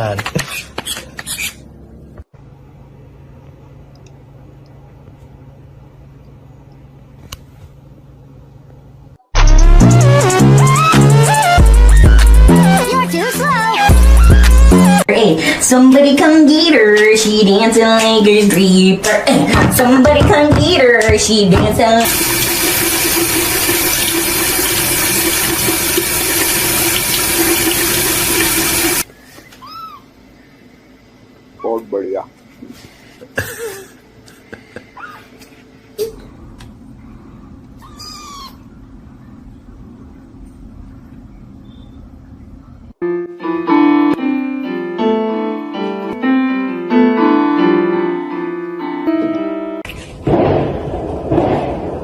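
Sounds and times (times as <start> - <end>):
running water rushing: 22.0 - 29.0
piano melody: 43.0 - 49.8.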